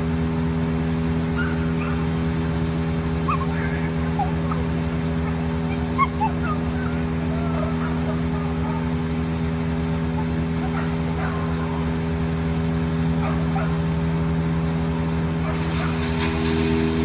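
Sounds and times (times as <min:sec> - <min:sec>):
engine droning: 0:00.0 - 0:17.0
dog whining: 0:01.3 - 0:12.4.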